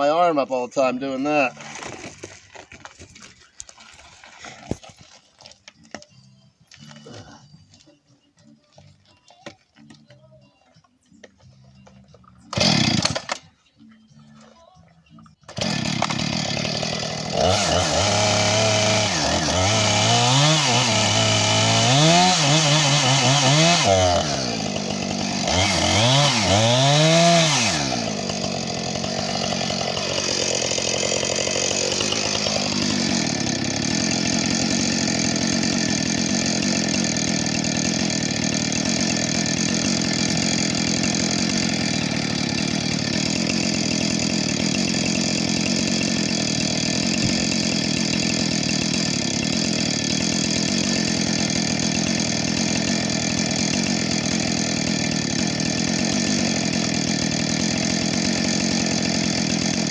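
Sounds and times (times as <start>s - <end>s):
chainsaw revving in a cut: 12.5s - 13.4s, 15.5s - 59.9s.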